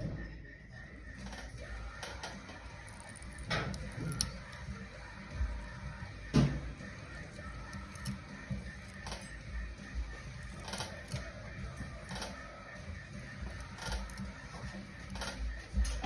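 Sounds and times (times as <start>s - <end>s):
thread tap creaking and clicking: 7.3s - 8.3s, 13.5s - 16.0s.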